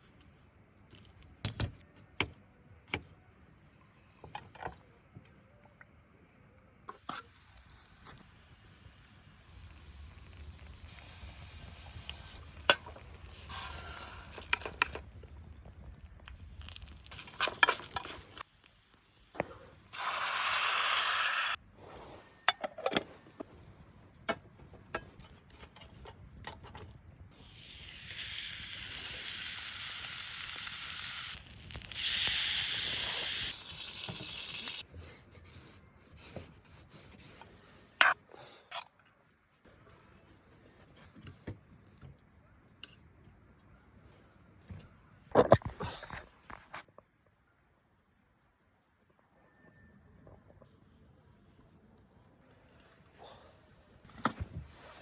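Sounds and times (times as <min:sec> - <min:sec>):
hot oil sizzling: 0:07.5 - 0:21.6, 0:27.4 - 0:34.8
loud hissing burst: 0:13.4 - 0:14.5.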